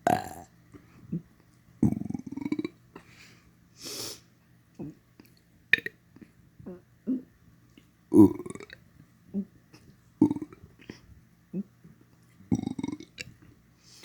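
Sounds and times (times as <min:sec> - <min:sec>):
person burping: 0:00.0 - 0:00.5, 0:08.1 - 0:08.7.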